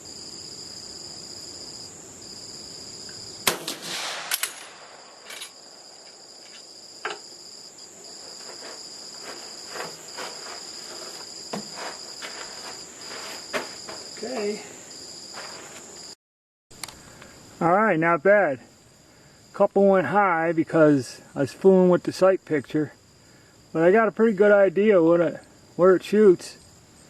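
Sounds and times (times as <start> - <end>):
crickets chirping: 0.0 - 27.0
rifle shot: 3.4 - 5.4.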